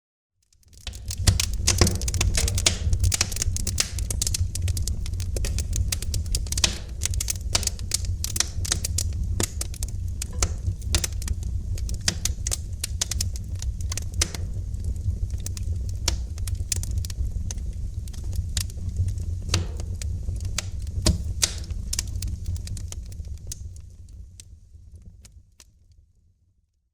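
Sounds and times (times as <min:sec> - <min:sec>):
wood fire crackling: 0:00.4 - 0:26.0.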